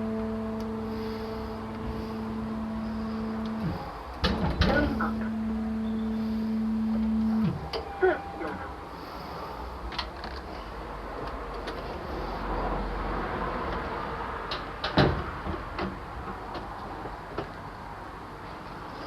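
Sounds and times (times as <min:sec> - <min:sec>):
lift door clunk: 0:00.0 - 0:08.3
lift low rumble: 0:00.0 - 0:18.0.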